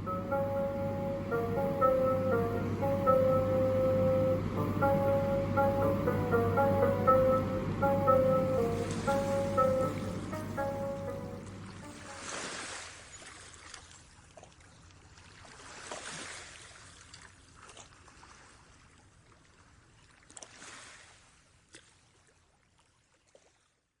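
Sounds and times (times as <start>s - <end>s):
water sloshing and lapping: 12.0s - 23.6s.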